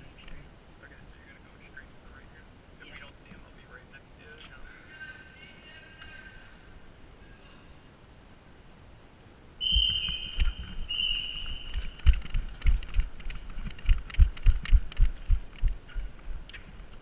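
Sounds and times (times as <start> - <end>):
running footsteps thudding: 11.6 - 16.2.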